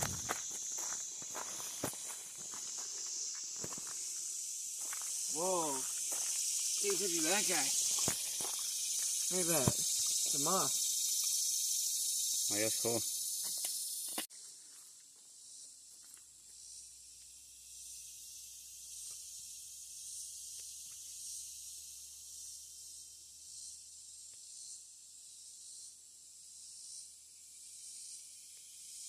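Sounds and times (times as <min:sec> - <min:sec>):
insect chorus trilling: 0:00.0 - 0:29.0.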